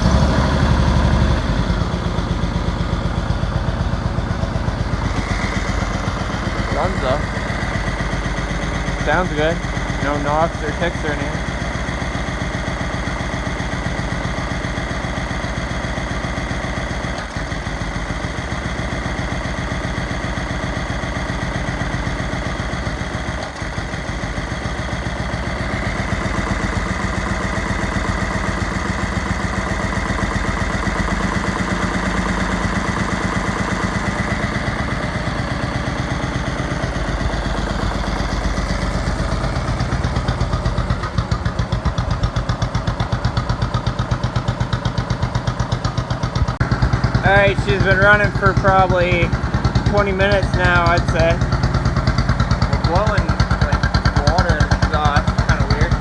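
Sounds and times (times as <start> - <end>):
mower engine idling: 0.0 - 56.0.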